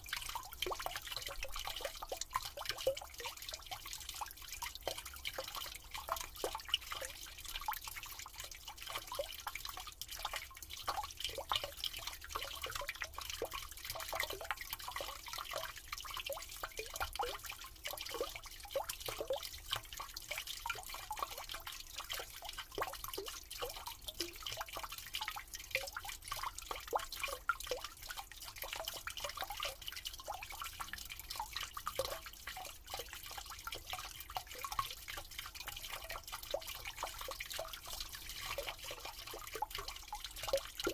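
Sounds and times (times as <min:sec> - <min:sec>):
drips and plops: 0:00.0 - 0:40.9
water trickle: 0:00.0 - 0:40.9.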